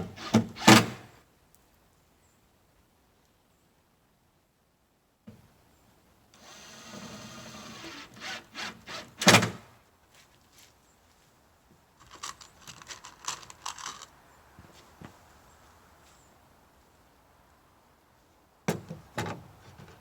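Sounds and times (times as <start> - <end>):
cordless drill driving a screw: 0.1 - 1.1, 6.4 - 9.7.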